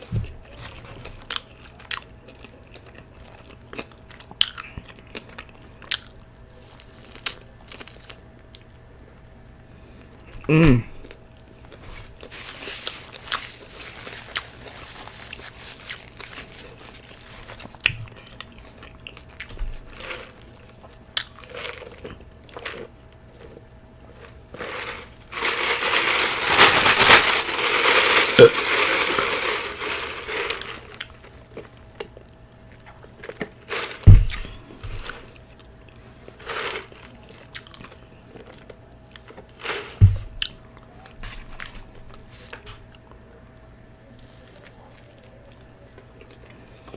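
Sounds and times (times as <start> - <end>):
loud crunching and rustling: 11.6 - 19.2, 21.4 - 31.7, 33.2 - 35.4
person chewing with lip smacks: 21.1 - 22.6.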